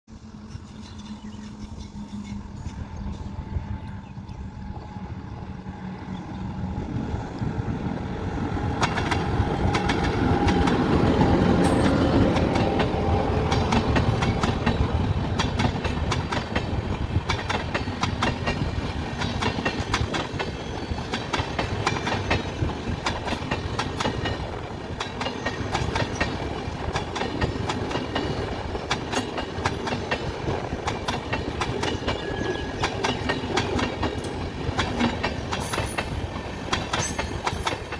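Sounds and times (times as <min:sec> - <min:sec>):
train locomotive passing: 0:00.1 - 0:37.9
train wheels clattering over rail joints: 0:08.8 - 0:37.9.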